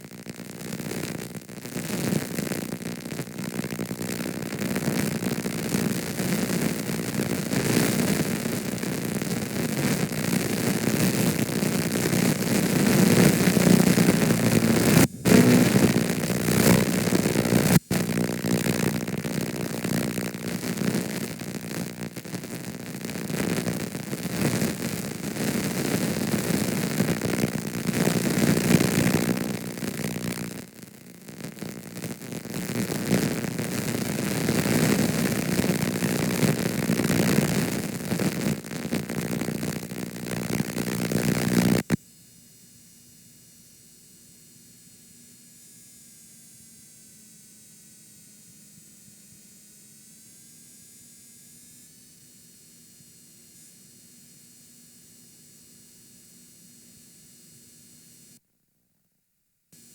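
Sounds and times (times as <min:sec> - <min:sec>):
videotape hiss and distorted noise: 0:00.0 - 0:42.0.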